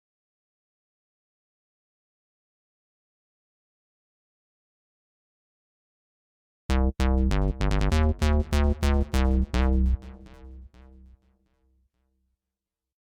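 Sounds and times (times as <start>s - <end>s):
keyboard bass notes: 6.7s - 11.2s.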